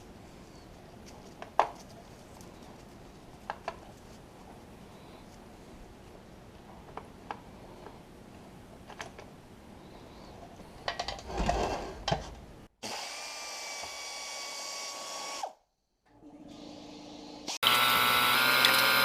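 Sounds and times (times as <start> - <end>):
power drill running: 16.5 - 19.0.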